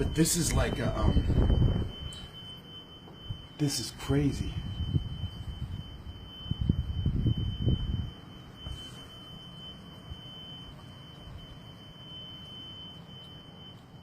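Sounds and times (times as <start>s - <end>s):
low rumbling wind: 0.0s - 3.6s, 4.3s - 8.7s
thin high-pitched whine: 0.0s - 14.0s.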